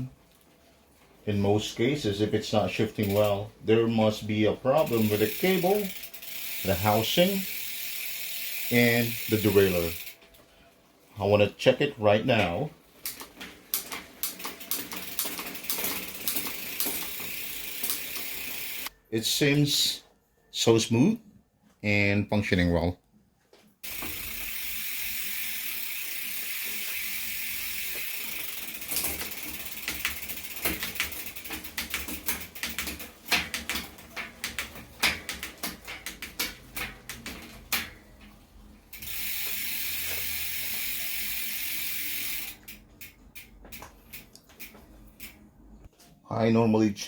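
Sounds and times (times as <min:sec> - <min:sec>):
gear shifting and hub ratchet clicks: 0:02.1 - 0:10.3, 0:12.0 - 0:18.9, 0:23.8 - 0:45.9
bike chain running over cassette: 0:02.7 - 0:03.5, 0:04.7 - 0:10.2, 0:13.7 - 0:18.9, 0:23.8 - 0:37.8, 0:38.9 - 0:45.4.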